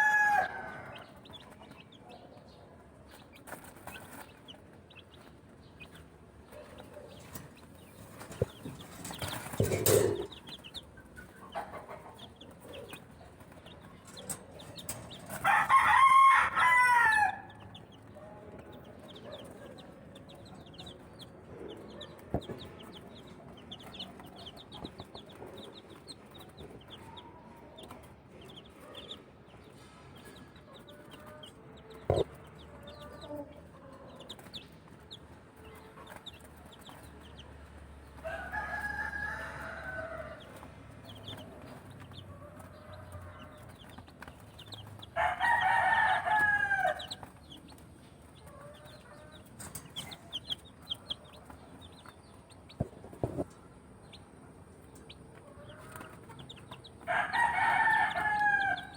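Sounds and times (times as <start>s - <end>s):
rooster crowing: 0.0s - 1.1s, 15.3s - 17.6s, 38.2s - 40.6s, 45.2s - 47.2s, 57.0s - 58.9s
chicks peeping: 0.0s - 58.9s
single knock: 32.1s - 32.3s.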